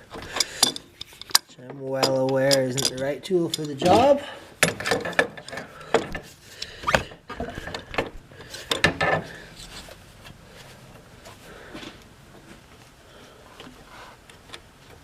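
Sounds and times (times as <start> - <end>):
wrench metallic clicks and scrapes: 0.0 - 5.8.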